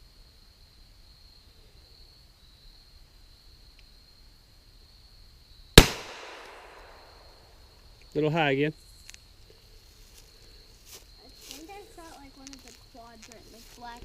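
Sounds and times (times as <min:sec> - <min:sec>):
pistol shot with echo: 0:05.8 - 0:07.2.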